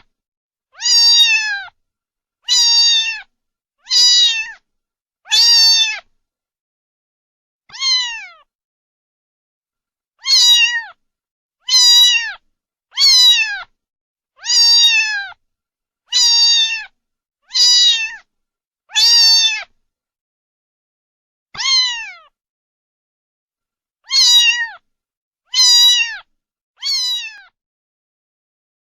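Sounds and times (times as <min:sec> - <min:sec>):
cat meowing: 0:00.7 - 0:01.8, 0:02.5 - 0:04.6, 0:05.3 - 0:06.1, 0:07.7 - 0:08.5, 0:10.2 - 0:11.0, 0:11.6 - 0:13.7, 0:14.4 - 0:15.4, 0:16.1 - 0:18.3, 0:18.9 - 0:19.8, 0:21.6 - 0:22.4, 0:24.0 - 0:24.8, 0:25.5 - 0:27.6.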